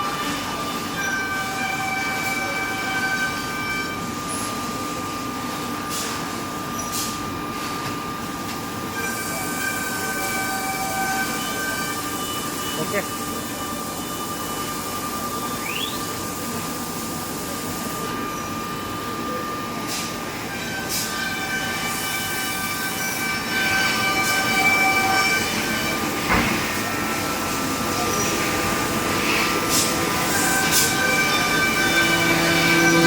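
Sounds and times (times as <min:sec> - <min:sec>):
cnc machine running: 0:00.0 - 0:33.0.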